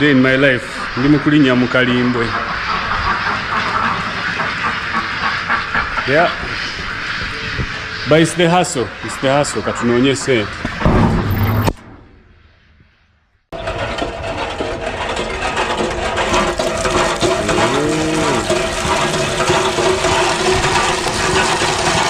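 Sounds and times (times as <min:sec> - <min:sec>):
loud steady rushing noise: 0:00.0 - 0:12.3
cow mooing: 0:17.4 - 0:18.5.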